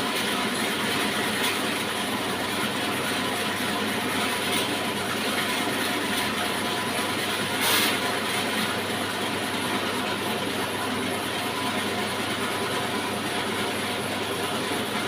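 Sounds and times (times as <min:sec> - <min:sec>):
sawmill machine running: 0:00.0 - 0:15.0.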